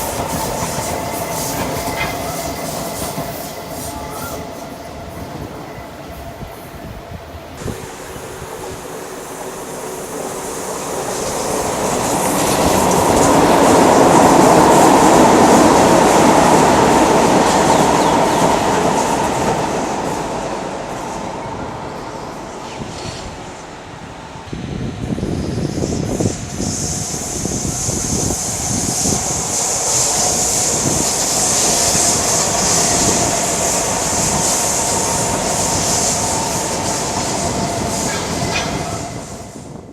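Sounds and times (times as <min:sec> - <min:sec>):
metro train running past: 0:00.0 - 0:39.9.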